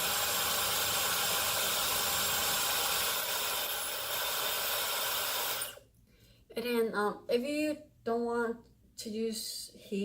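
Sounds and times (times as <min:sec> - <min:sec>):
hair dryer blowing air: 0:00.0 - 0:05.8.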